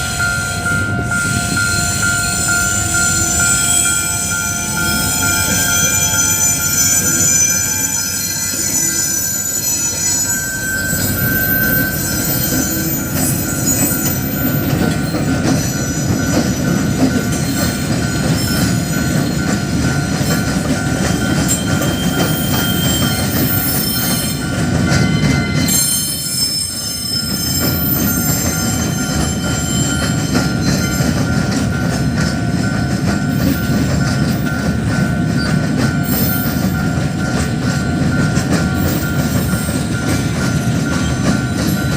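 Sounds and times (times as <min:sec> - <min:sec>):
train wheels rumbling on rail: 0:00.0 - 0:41.9
high-pitched wheel squeal: 0:01.3 - 0:14.6, 0:21.5 - 0:24.4, 0:25.1 - 0:31.1.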